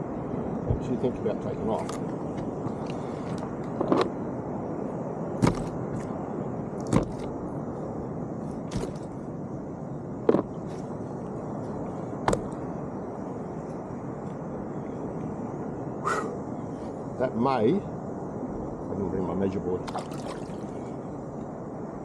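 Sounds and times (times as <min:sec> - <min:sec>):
knocks on a kayak: 0:05.4 - 0:05.7, 0:06.9 - 0:07.2.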